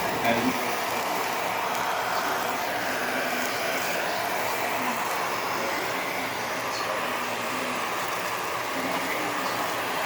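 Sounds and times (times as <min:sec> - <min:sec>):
steaks sizzling on a grill: 0:00.0 - 0:10.0.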